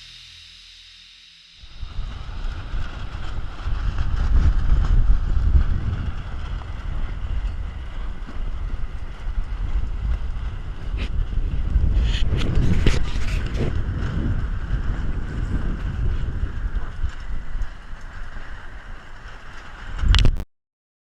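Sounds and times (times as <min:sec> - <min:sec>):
wind buffeting microphone: 0:01.6 - 0:20.4.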